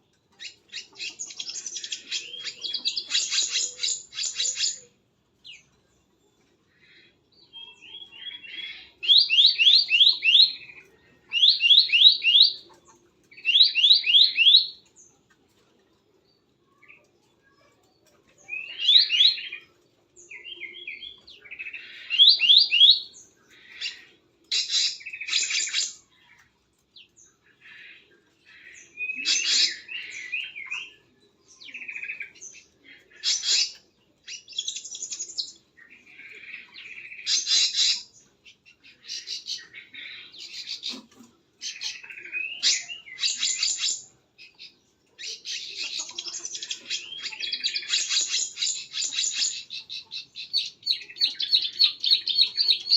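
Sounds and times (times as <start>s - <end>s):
small birds chirping: 0.0s - 52.9s.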